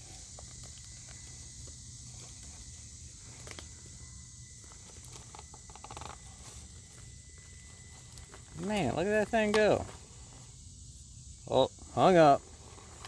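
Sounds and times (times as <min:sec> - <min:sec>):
clicks and rustles: 0:00.0 - 0:04.0, 0:04.6 - 0:10.4.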